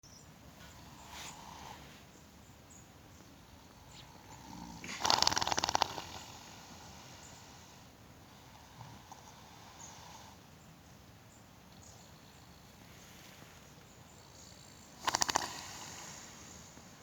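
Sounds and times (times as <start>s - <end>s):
horse snoring: 0.6s - 2.1s, 3.5s - 10.4s, 14.3s - 17.0s.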